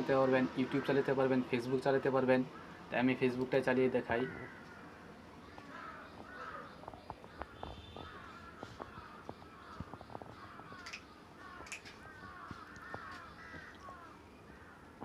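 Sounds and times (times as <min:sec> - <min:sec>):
faint bird calls: 0:04.1 - 0:15.0
small clicks: 0:10.8 - 0:12.0.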